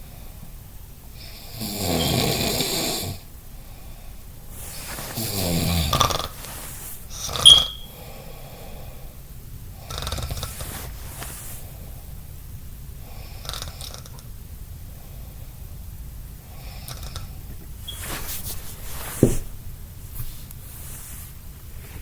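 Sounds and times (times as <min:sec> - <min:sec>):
person snoring: 0:01.3 - 0:03.2, 0:04.6 - 0:07.4
sharp sound with high whistle: 0:07.4 - 0:08.0.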